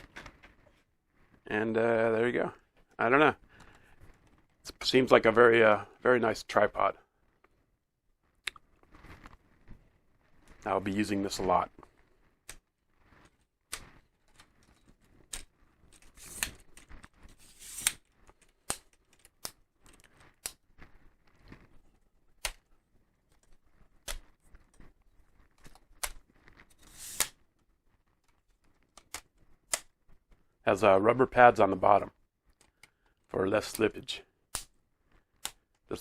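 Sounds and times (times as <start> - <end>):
tripod parts scraping: 15.9 - 18.1, 26.6 - 27.4.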